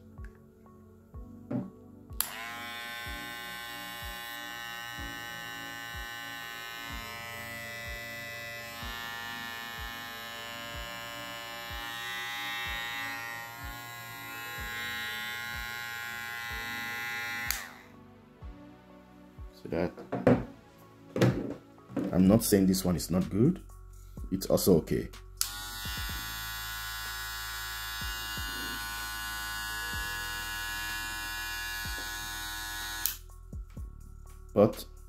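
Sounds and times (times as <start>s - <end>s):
hair clipper motor running: 2.2s - 17.9s, 25.4s - 33.2s
hair clipper switch: 2.2s - 17.9s, 25.4s - 33.2s.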